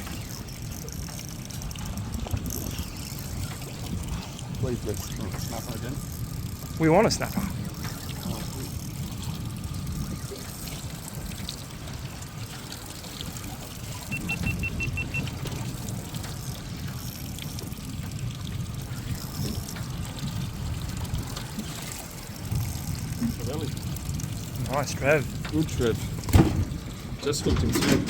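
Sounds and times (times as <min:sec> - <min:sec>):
water lapping against boat hull: 0:00.0 - 0:28.0
short high beeps: 0:14.1 - 0:15.3.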